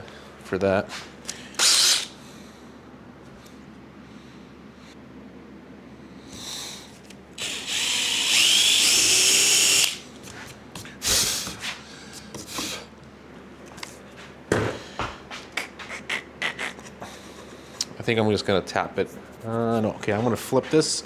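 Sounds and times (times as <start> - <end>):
power drill whining: 1.3 - 2.2, 7.4 - 10.1.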